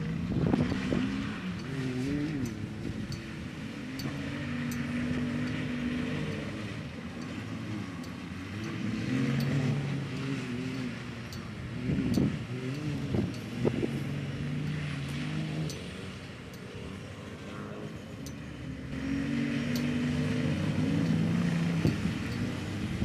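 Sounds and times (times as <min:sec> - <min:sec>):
vehicle engine running: 0:00.0 - 0:23.0
light clicks and rattles: 0:07.2 - 0:17.5.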